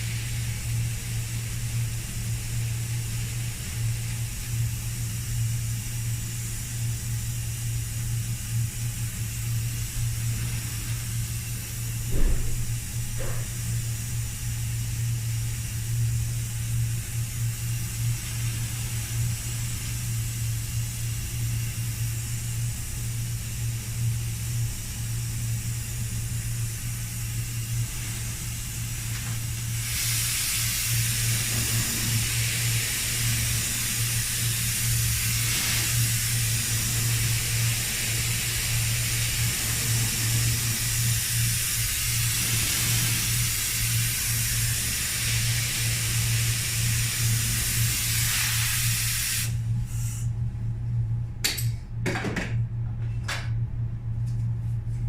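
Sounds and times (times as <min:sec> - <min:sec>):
spray gun air hissing: 0:00.0 - 0:50.3
steady low hum: 0:00.0 - 0:55.0.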